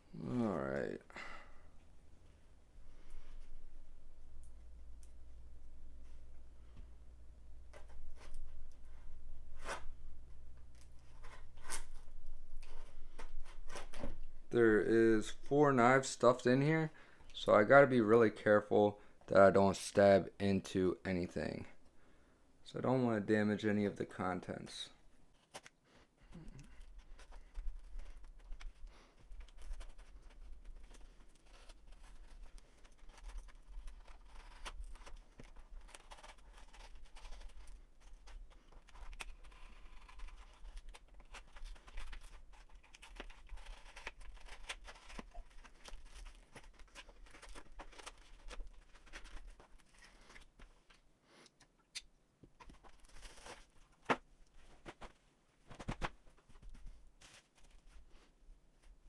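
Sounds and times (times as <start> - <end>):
cardboard tearing and crinkling: 27.0 - 50.5, 52.8 - 54.2.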